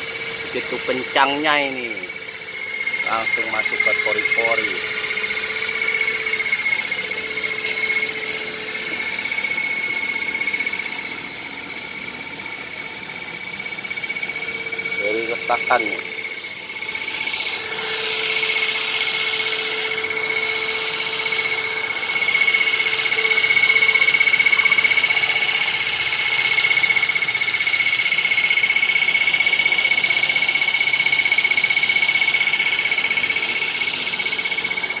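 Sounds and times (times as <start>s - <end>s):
asphalt injection machine running: 0.0s - 35.0s
high-pitched motor tone: 0.0s - 35.0s
low machine tone: 0.0s - 35.0s
hiss: 16.9s - 35.0s.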